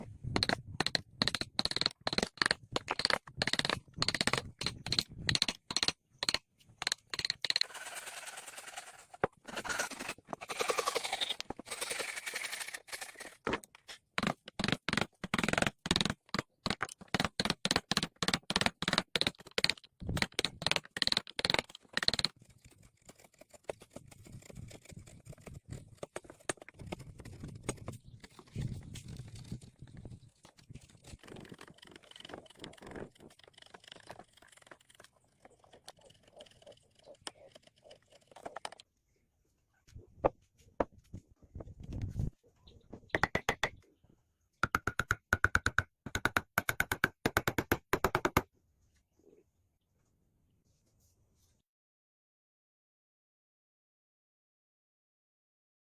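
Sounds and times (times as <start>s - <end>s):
knocks and clicks on wood: 0.3s - 7.6s, 14.2s - 22.3s, 43.2s - 43.8s, 44.6s - 48.5s.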